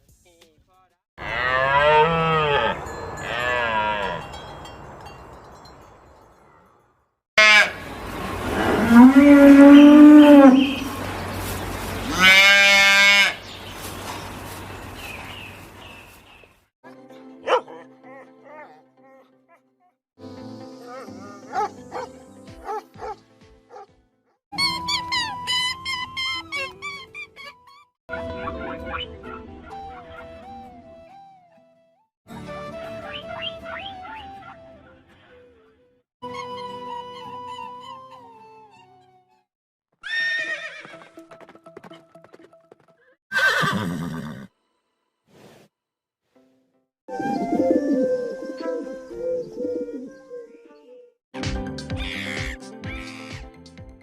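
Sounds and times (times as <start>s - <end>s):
farm animals calling: 7.4s - 16.2s
music: 16.8s - 27.3s, 28.1s - 39.5s, 40.9s - 43.1s, 46.4s - 54.0s.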